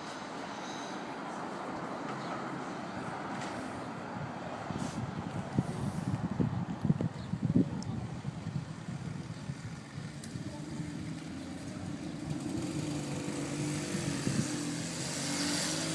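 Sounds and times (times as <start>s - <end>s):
moped engine running: 8.2s - 15.9s.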